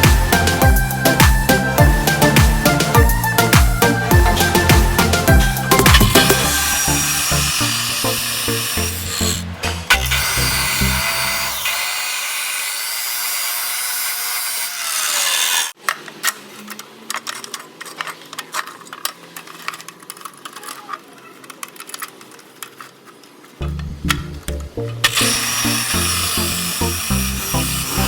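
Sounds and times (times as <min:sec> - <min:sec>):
power tool grinding metal: 0:00.0 - 0:15.8, 0:24.9 - 0:28.0
hand rasping on metal: 0:05.9 - 0:11.6.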